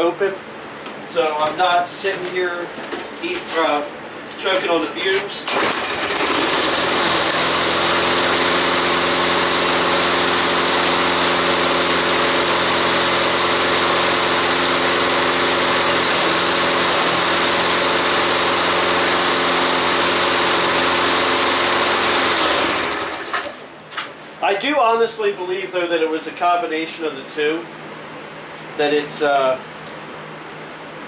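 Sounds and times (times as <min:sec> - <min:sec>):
lawnmower engine running: 0:05.4 - 0:23.7.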